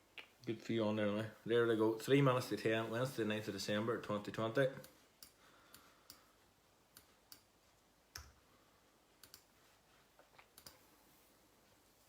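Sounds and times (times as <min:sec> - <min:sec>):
computer mouse and key clicks: 0:06.9 - 0:07.5, 0:09.2 - 0:09.5, 0:10.3 - 0:10.8.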